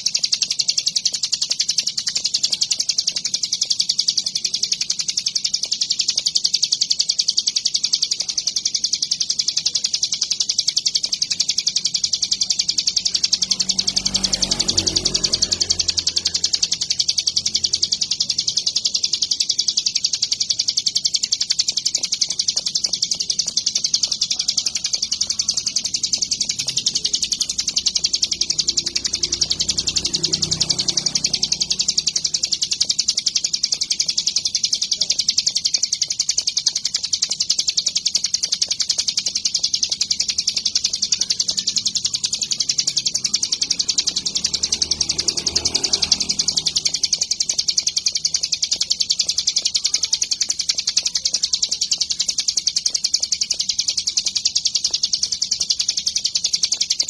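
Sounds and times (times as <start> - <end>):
bird singing rapid chirps: 0.0 - 57.0.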